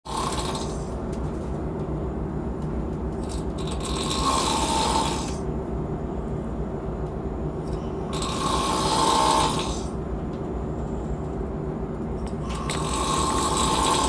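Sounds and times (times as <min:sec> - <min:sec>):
person snoring: 0:00.1 - 0:00.9, 0:03.6 - 0:05.4, 0:08.1 - 0:09.9, 0:12.5 - 0:14.0
steady low hum: 0:00.1 - 0:14.0.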